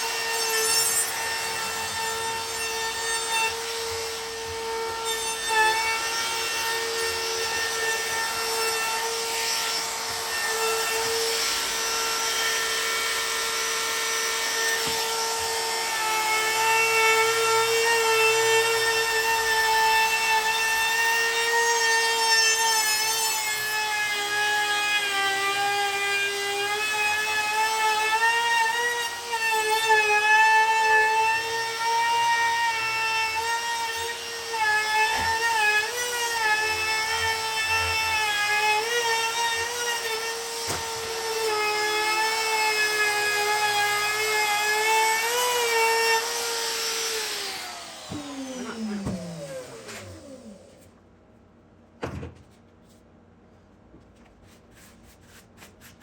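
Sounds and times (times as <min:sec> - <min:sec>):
power sander on wood: 0:00.0 - 0:50.9.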